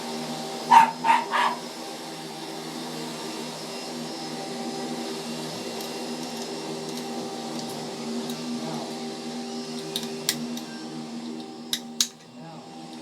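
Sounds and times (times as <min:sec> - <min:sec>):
vacuum cleaner droning: 0:00.0 - 0:13.0
small sharp clicks of parts: 0:05.8 - 0:08.5, 0:09.7 - 0:10.8, 0:11.4 - 0:12.3.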